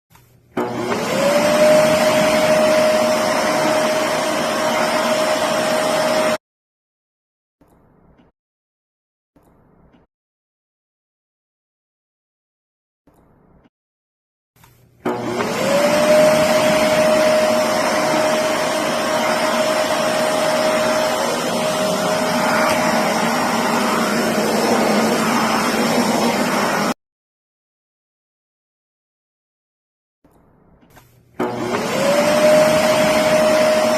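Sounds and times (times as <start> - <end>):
vacuum cleaner motor running: 0.6 - 6.4, 15.0 - 27.0, 31.4 - 33.9.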